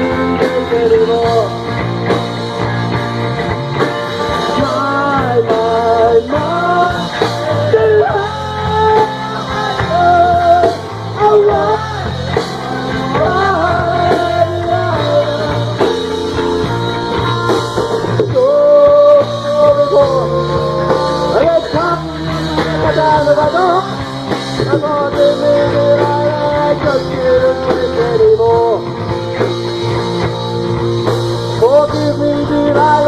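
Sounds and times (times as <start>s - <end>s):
rock band playing: 0.0s - 33.0s.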